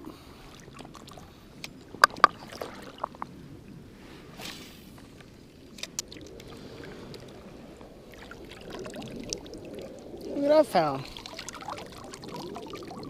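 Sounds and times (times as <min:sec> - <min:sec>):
water sloshing around wading person: 0:00.0 - 0:13.0
sharp clicks: 0:05.7 - 0:06.5.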